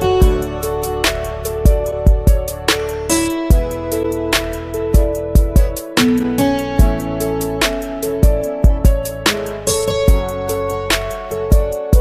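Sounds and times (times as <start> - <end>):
deep kick drum hits: 0.2 - 0.5, 1.7 - 2.7, 3.5 - 3.8, 5.0 - 5.8, 6.8 - 7.1, 8.2 - 9.2, 9.9 - 10.4.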